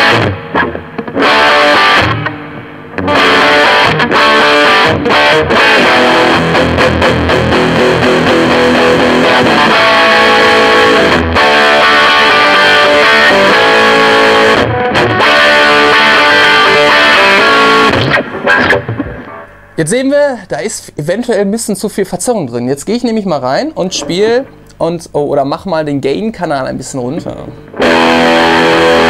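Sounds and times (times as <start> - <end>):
distorted electric guitar riffs: 0.0 - 21.4, 23.1 - 25.2, 26.2 - 29.0.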